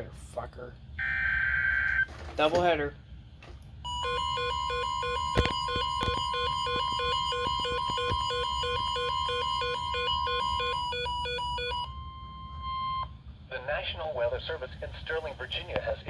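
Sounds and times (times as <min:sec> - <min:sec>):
steady alarm tone: 0:03.8 - 0:13.2.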